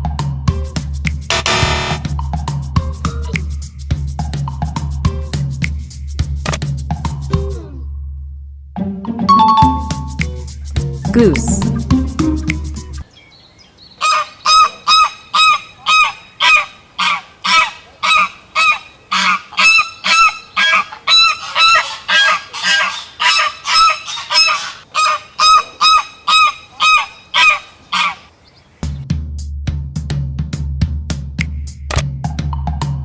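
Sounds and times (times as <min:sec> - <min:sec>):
goose honking: 0:14.0 - 0:28.3.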